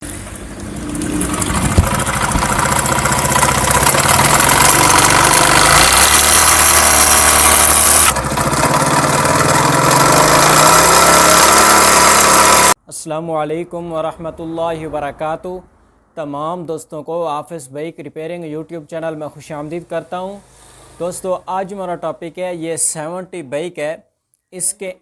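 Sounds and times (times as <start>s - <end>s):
motorcycle engine running: 0.0s - 12.8s
engine knock: 0.8s - 12.7s.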